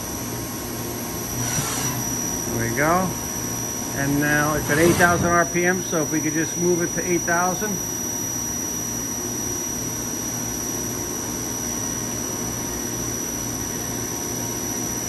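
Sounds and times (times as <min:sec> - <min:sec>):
machine spindle high whine: 0:01.1 - 0:08.9.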